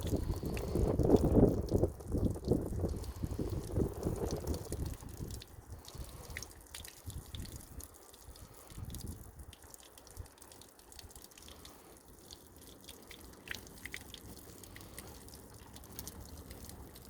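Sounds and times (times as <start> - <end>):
small water splashes: 0.0 - 17.0
water dripping and trickling: 0.0 - 17.0.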